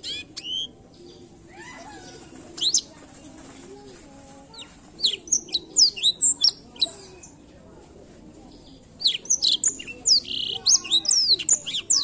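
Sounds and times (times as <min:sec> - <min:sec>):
canary singing high chirps: 0:00.0 - 0:02.9, 0:04.5 - 0:07.4, 0:09.0 - 0:12.0.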